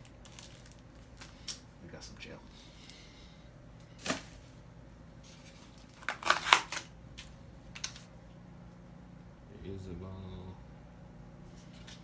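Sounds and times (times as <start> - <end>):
packaging clicks and rustles: 0.0 - 1.7, 5.3 - 8.1.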